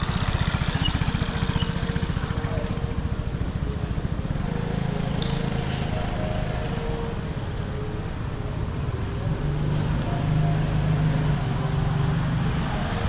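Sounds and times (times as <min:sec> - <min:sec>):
street noise: 0:00.0 - 0:13.0
vehicle engine throbbing: 0:00.0 - 0:13.0.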